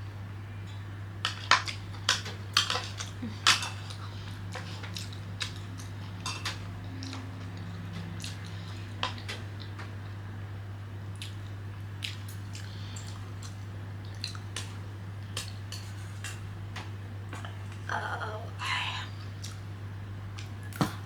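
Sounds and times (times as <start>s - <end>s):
chopsticks clicking on dishes: 1.2s - 9.9s.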